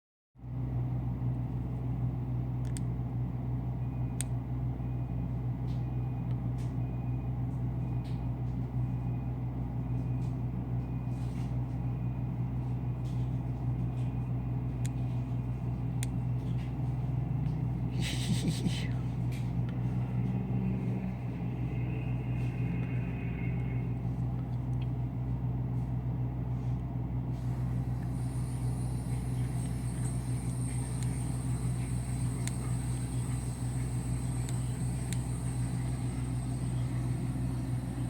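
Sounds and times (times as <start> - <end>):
car engine idling: 27.4 - 38.0
scattered clicks: 27.5 - 38.0.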